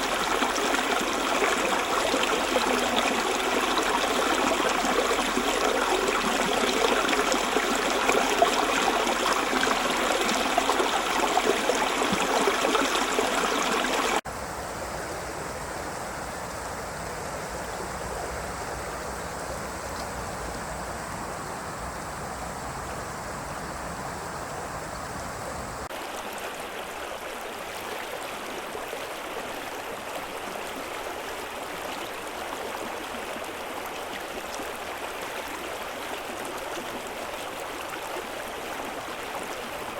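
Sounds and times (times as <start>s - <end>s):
river water rushing over rocks: 0.0s - 14.2s.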